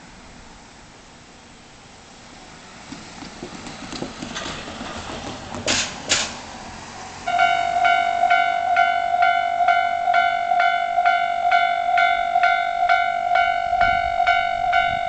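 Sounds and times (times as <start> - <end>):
level crossing warning bell: 7.2 - 15.0.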